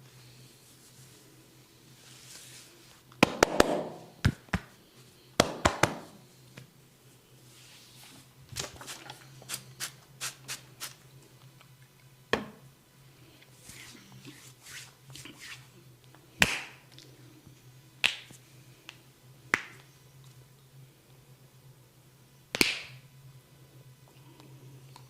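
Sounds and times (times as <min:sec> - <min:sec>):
hands slapping head and body: 0:03.2 - 0:04.8, 0:05.4 - 0:06.7, 0:16.4 - 0:16.8, 0:18.0 - 0:18.4, 0:19.5 - 0:19.8, 0:22.6 - 0:23.0.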